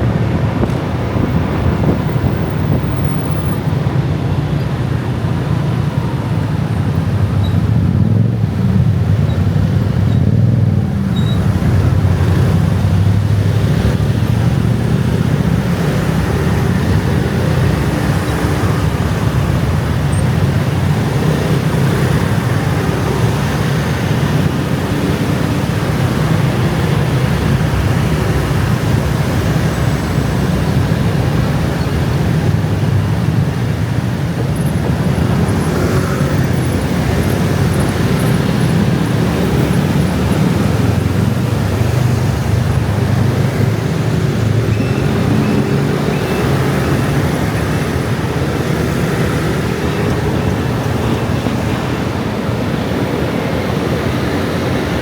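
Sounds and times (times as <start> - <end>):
scooter and motorbike traffic: 0.0 - 55.0.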